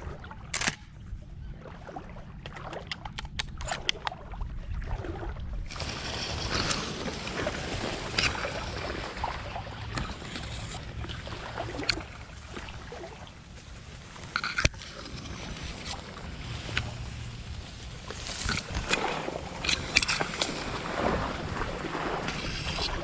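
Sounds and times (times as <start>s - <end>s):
water sloshing and splashing: 0.0s - 23.0s
sharp click: 0.5s - 0.9s
rustling: 5.7s - 23.0s.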